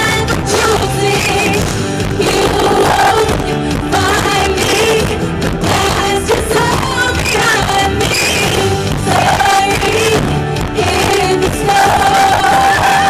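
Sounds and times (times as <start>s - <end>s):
live pop-rock band playing: 0.0s - 13.0s
singer holding long notes: 0.0s - 13.0s.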